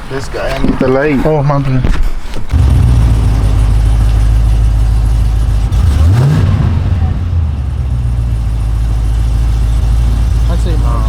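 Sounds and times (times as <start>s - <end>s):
car engine idling and revving: 2.5s - 11.0s.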